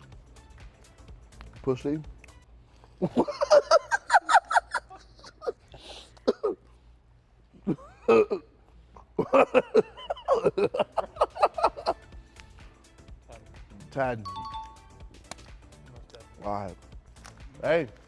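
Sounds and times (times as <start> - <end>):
people laughing: 3.0 - 5.6, 9.2 - 12.0.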